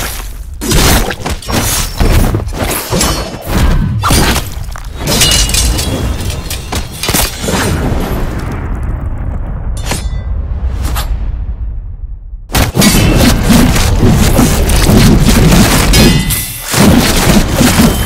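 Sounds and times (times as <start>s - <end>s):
low rumble: 7.8s - 16.0s
fight hits and impacts: 12.5s - 18.0s.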